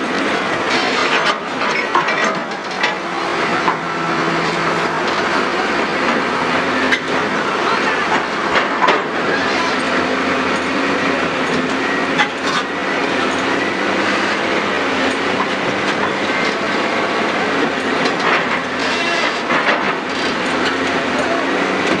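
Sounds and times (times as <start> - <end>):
heavy diesel machinery running: 0.0 - 22.0.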